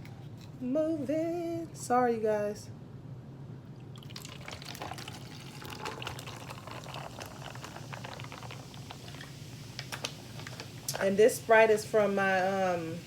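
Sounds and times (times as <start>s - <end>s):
soda fizzing over ice: 3.9s - 13.0s.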